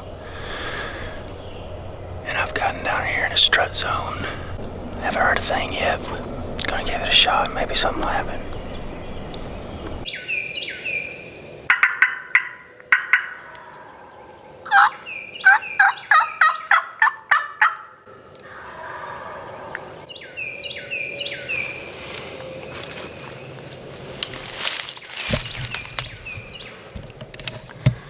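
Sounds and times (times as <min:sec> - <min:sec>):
turkeys gobbling: 0:00.0 - 0:10.0, 0:11.7 - 0:13.9, 0:14.7 - 0:20.0
high falling bird calls: 0:00.0 - 0:27.0.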